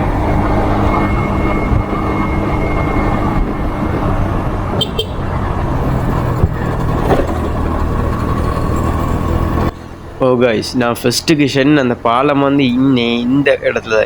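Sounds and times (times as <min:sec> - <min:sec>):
motorcycle engine running: 0:00.0 - 0:09.8
road noise: 0:00.0 - 0:14.0.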